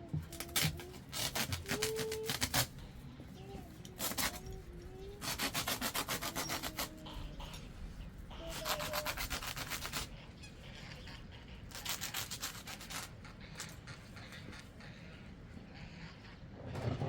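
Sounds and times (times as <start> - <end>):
rapid rhythmic scraping strokes: 4.0 - 17.0.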